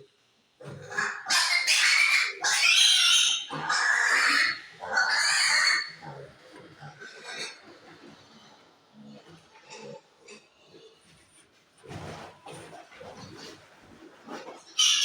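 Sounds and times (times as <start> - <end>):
piglet grunting: 0.6 - 8.3
piglet squealing: 0.8 - 6.0, 14.8 - 15.0.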